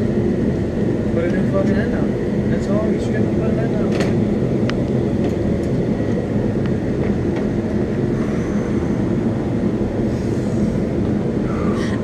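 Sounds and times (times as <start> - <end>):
machine droning: 0.0 - 12.0.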